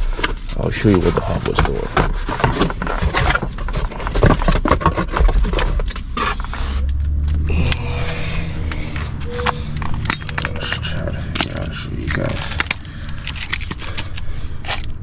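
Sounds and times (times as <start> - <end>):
wheel bearing droning hum: 6.0 - 15.0.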